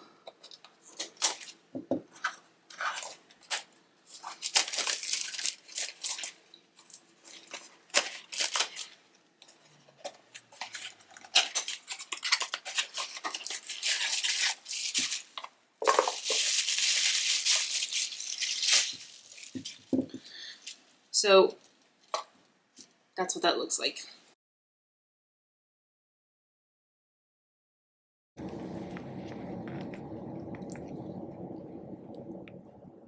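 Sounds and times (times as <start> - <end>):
packaging rustling and tearing: 0.4 - 1.6, 2.2 - 22.2.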